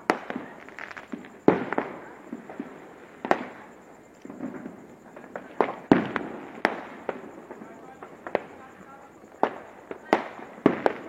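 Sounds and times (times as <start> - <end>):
fireworks bangs: 0.0 - 11.0.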